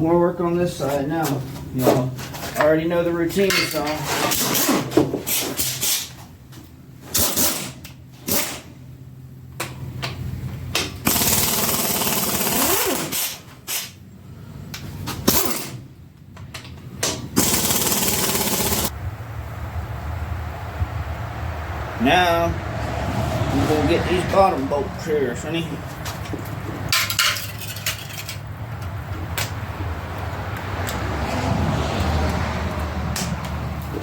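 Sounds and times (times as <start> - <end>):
hand tools clicking and knocking: 2.4 - 6.1, 25.8 - 29.6
impact wrench spinning bolts: 11.0 - 14.0, 17.4 - 18.9.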